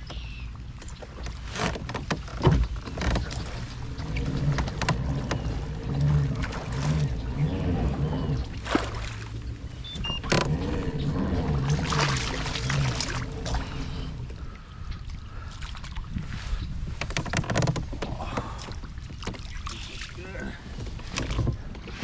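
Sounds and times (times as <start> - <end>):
gear knocking on kayak: 0.8 - 8.9
low rhythmic whir: 2.4 - 15.3.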